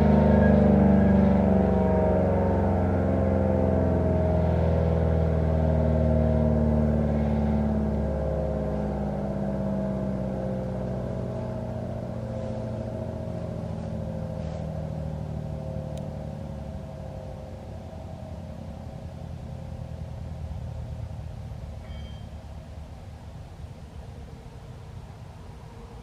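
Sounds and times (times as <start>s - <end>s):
warning siren winding down: 0.0s - 20.0s.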